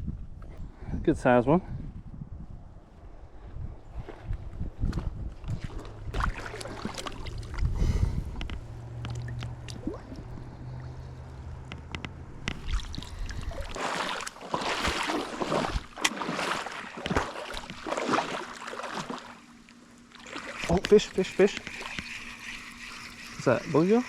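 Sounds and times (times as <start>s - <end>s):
low rumble on microphone: 0.0s - 13.8s
creek water splashing: 5.4s - 11.6s, 12.3s - 24.0s.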